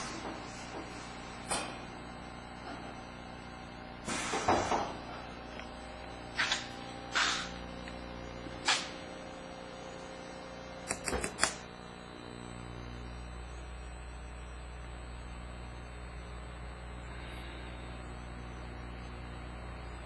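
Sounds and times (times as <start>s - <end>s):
engraving machine humming: 0.0s - 20.0s
quick clicks: 10.8s - 11.6s.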